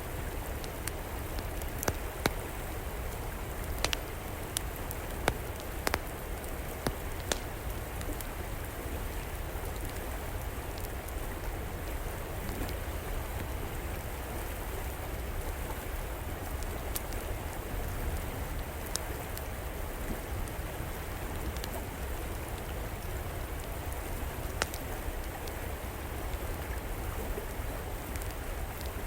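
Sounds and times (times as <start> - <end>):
river water flowing: 0.0 - 29.0
wood fire crackling and popping: 0.2 - 8.4, 16.4 - 17.4, 20.2 - 26.7.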